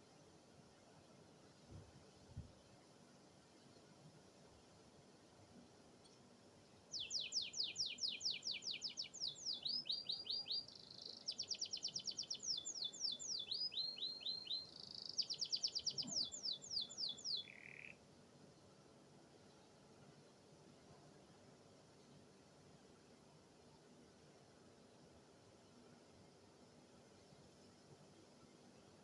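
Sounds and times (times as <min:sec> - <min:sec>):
canary singing: 0:07.0 - 0:18.0.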